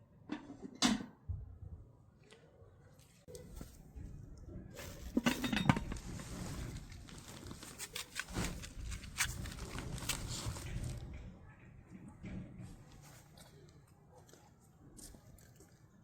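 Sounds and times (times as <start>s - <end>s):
cookware clattering: 5.0s - 6.0s.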